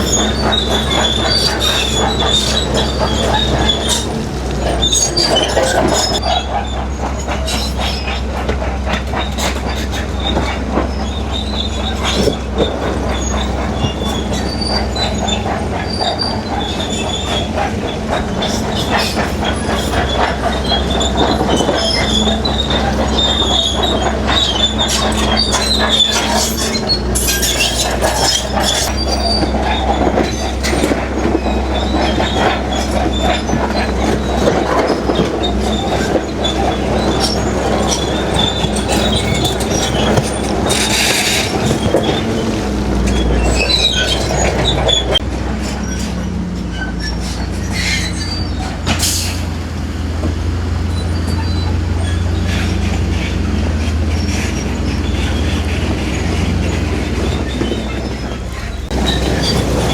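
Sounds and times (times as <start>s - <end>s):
high metallic squealing: 0.0s - 49.6s, 50.8s - 59.9s
clanks of steel tracks and rock: 0.0s - 59.9s
diesel engine drone: 0.0s - 59.9s.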